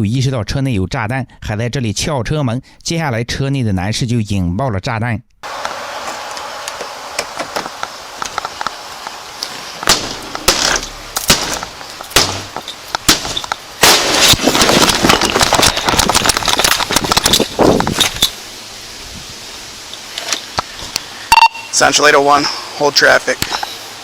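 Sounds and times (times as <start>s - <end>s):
crackling pops: 5.6s - 18.4s
loud sharp bangs: 9.8s - 15.8s.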